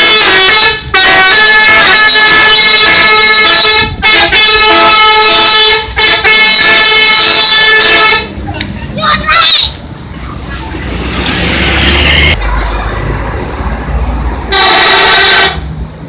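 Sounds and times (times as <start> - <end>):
musical air horn blaring: 0.0 - 8.4, 14.5 - 15.6.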